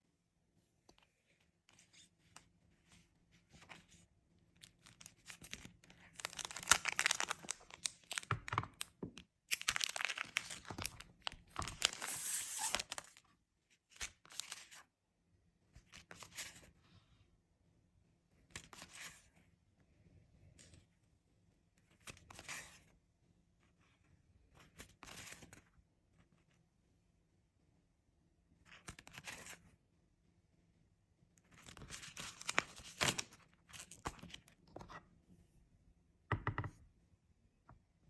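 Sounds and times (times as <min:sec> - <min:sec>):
paper rustling and tearing: 0:09.5 - 0:11.0, 0:11.6 - 0:13.2.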